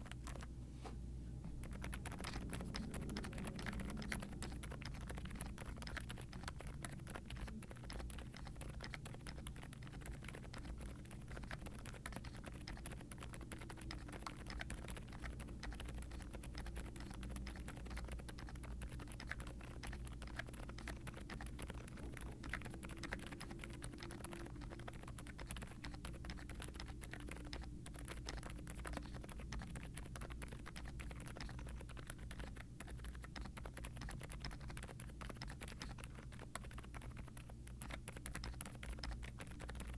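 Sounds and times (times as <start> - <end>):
soft muted keyboard typing: 0.0 - 0.5, 1.4 - 39.9.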